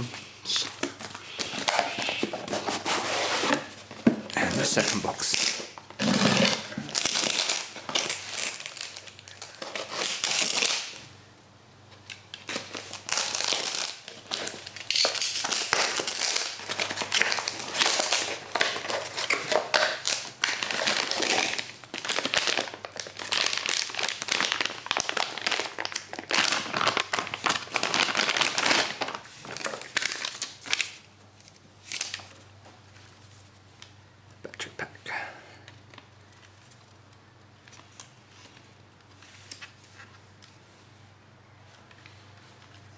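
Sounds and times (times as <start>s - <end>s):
packaging crinkling and rustling: 0.0s - 11.1s, 11.9s - 34.0s.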